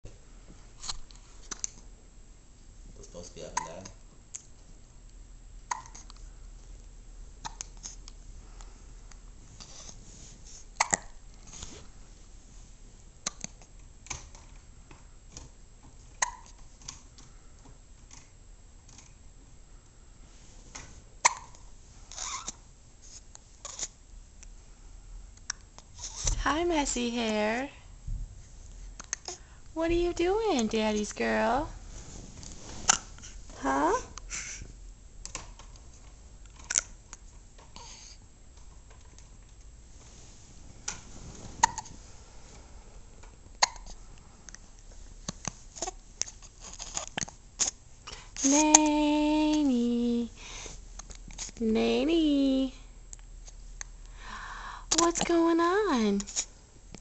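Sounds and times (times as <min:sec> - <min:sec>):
baby hiccupping: 0:03.5 - 0:04.0, 0:05.7 - 0:06.2, 0:10.8 - 0:11.2, 0:13.2 - 0:13.7, 0:16.2 - 0:16.6, 0:21.2 - 0:22.6, 0:23.6 - 0:24.0, 0:41.6 - 0:41.9, 0:43.5 - 0:44.0.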